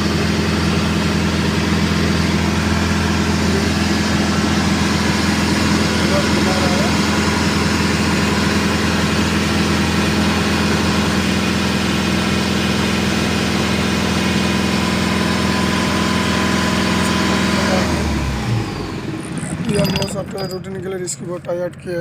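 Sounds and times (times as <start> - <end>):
boat diesel engine idling: 0.0 - 13.7.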